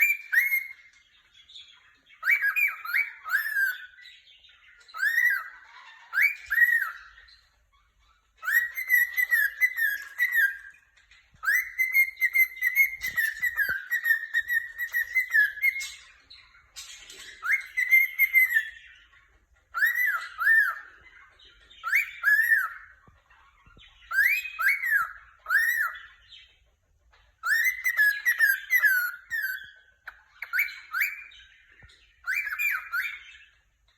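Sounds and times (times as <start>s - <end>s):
cockatiel chirping and whistling: 0.0s - 33.9s.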